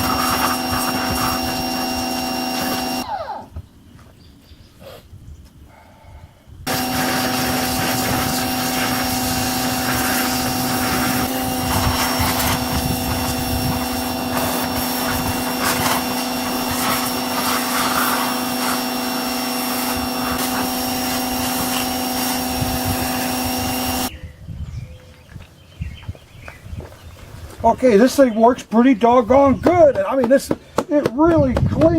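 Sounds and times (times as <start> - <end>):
water jet hissing: 0.0 - 3.0, 6.7 - 24.1
pressure washer pump humming: 0.0 - 3.6, 6.7 - 24.1.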